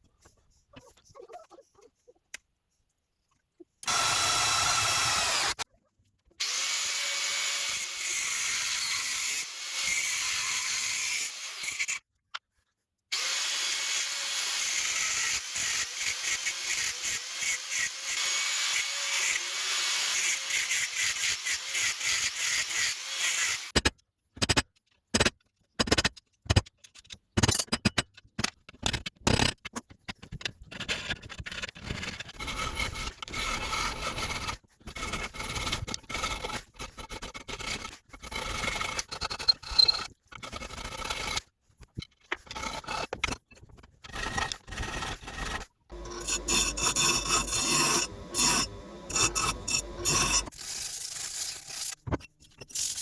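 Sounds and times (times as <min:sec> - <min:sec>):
power tool whining and hissing: 0:03.9 - 0:05.6, 0:45.9 - 0:50.5.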